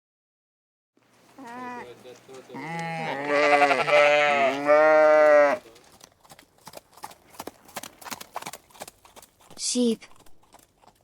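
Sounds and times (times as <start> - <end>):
sheep bleating: 1.4 - 5.6.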